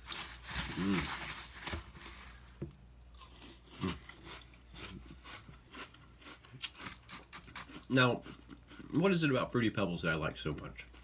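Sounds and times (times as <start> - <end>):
chewing crunchy cereal: 0.0 - 9.6.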